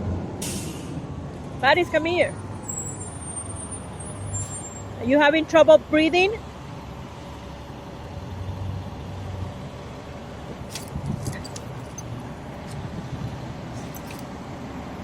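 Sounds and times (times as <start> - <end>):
car engine idling: 9.0 - 15.0.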